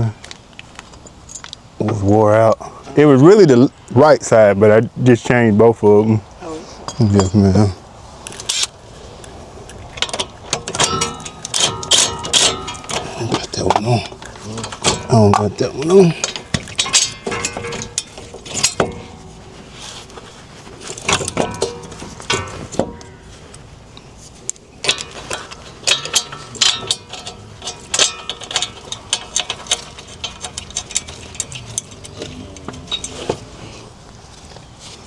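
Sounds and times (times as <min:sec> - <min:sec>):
metal tools clinking and clanking: 0:06.8 - 0:07.7, 0:08.3 - 0:08.8, 0:09.9 - 0:23.7, 0:24.4 - 0:34.8.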